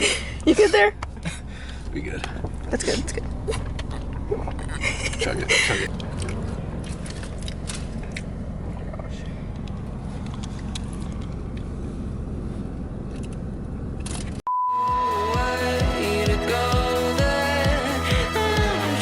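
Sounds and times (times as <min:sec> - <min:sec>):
low rumble inside car: 0:00.0 - 0:14.4.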